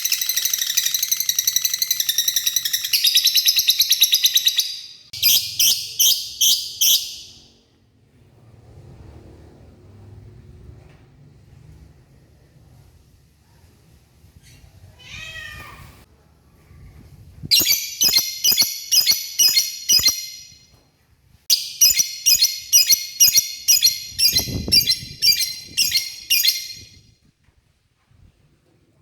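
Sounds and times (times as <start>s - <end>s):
lovebird shrill chirps: 0.0s - 7.5s, 17.5s - 20.6s, 21.5s - 27.0s.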